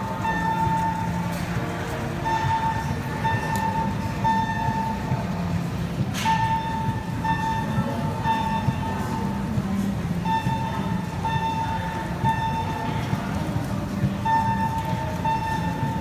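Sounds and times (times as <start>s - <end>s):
fire alarm horn blasts: 0.1s - 5.1s, 14.2s - 16.0s.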